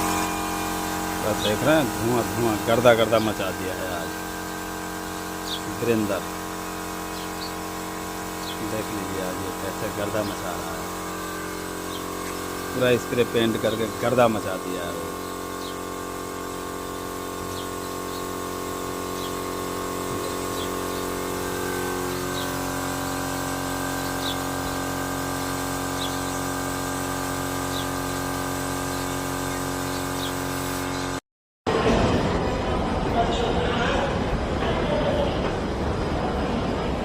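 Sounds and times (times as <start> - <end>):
spray machine motor hum: 0.0 - 31.2
bird chirps: 5.4 - 5.7, 11.8 - 12.8, 15.2 - 15.9, 17.5 - 18.4, 19.1 - 19.4, 20.1 - 21.2, 22.1 - 22.6, 23.9 - 24.9, 25.9 - 26.5, 28.9 - 31.2.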